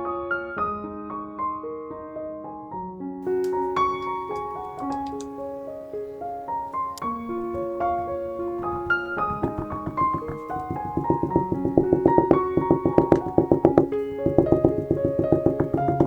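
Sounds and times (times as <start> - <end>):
piano music: 3.3 - 16.0.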